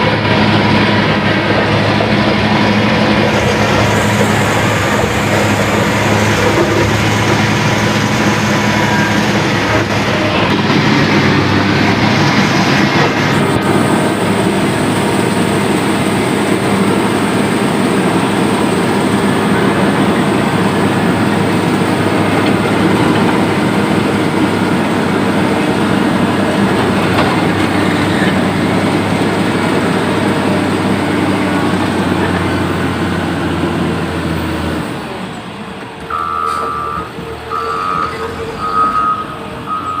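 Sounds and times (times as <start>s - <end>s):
diesel machinery running: 0.0s - 40.0s
reversing alarm beeping: 8.2s - 9.6s, 36.1s - 40.0s.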